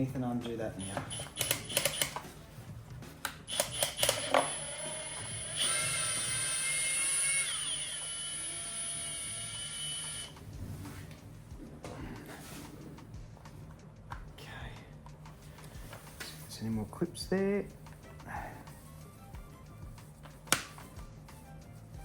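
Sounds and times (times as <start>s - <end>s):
power drill motor whining: 3.5s - 10.4s.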